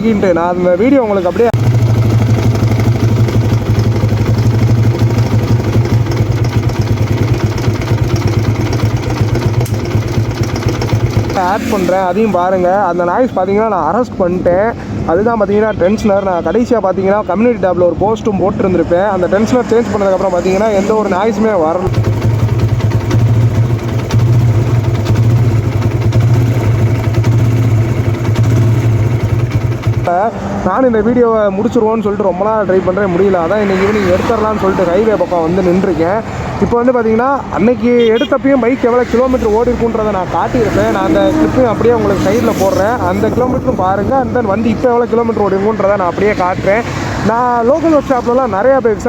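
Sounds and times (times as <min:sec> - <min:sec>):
motorcycle engine idling: 0:00.0 - 0:14.0, 0:18.6 - 0:49.0
fast repeating engine tick: 0:01.6 - 0:11.8, 0:21.9 - 0:30.3.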